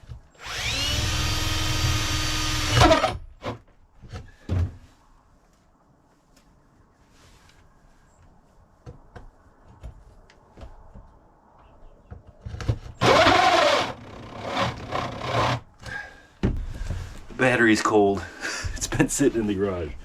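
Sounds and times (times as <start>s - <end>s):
cordless drill motor bursts: 0.4s - 3.2s, 13.0s - 15.6s.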